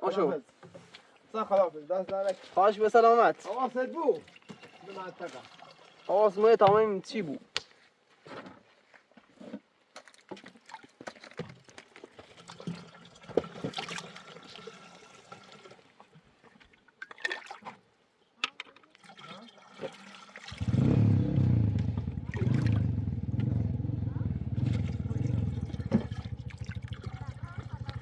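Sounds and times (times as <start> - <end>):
faint trickle of water: 0.9 - 6.6, 9.9 - 20.8, 24.7 - 28.0
small engine running: 24.6 - 28.0.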